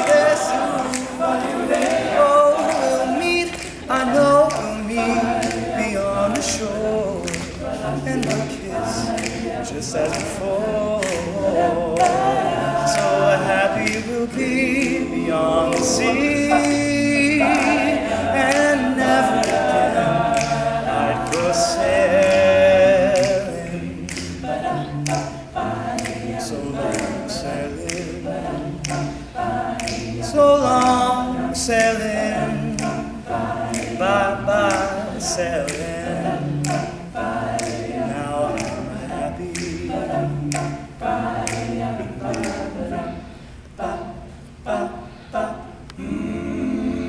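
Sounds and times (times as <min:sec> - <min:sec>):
male a cappella singing: 0:00.0 - 0:47.0.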